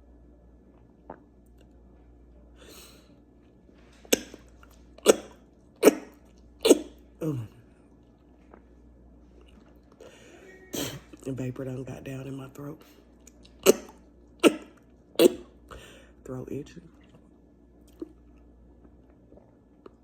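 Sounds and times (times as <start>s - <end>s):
faint breath: 10.0s - 10.6s, 15.7s - 16.2s
woman coughing hard: 10.7s - 11.1s, 13.7s - 15.4s.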